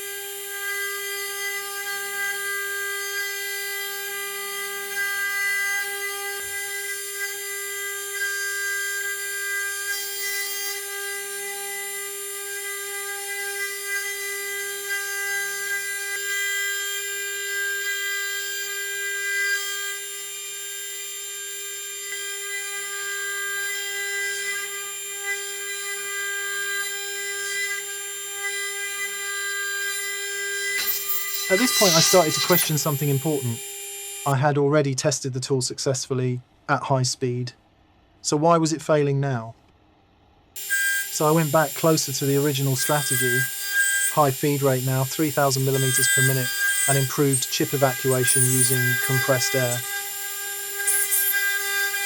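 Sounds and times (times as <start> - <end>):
spindle high-pitched whine: 29.8 - 34.4, 40.6 - 52.0.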